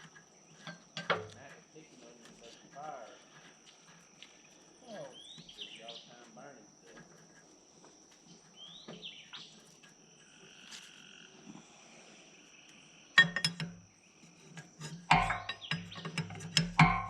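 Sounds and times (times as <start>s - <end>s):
insects droning: 0.0s - 17.0s
loud sharp knocks: 15.1s - 17.0s.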